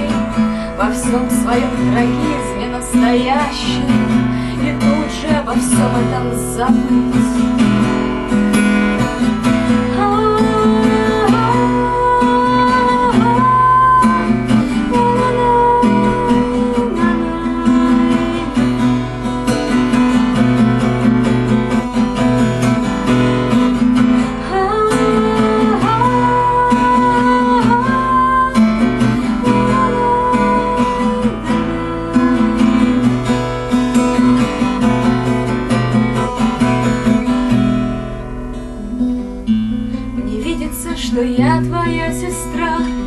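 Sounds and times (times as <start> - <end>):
acoustic guitar strumming: 0.0 - 43.0.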